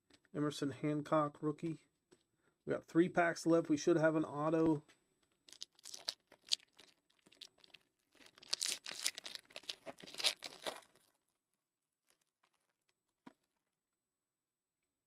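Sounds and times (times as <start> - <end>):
card pack wrapper tearing: 5.5 - 11.1.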